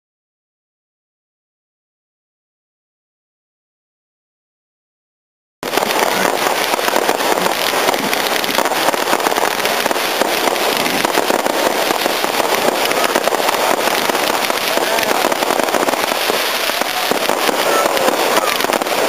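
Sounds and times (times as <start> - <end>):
fireworks crackling: 5.6 - 19.0.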